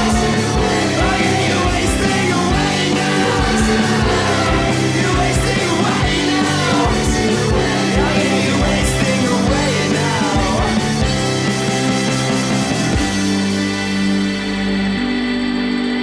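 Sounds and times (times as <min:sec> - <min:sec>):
person singing: 0:00.0 - 0:11.4
rock song with drums and bass: 0:00.0 - 0:16.0.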